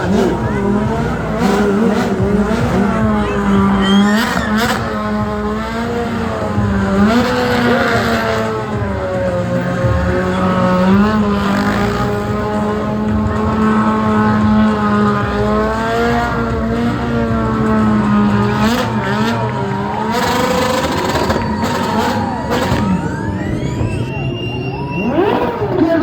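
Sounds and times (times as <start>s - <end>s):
motorcycle engine revving high: 0.0s - 26.0s
steady high tone: 20.9s - 26.0s.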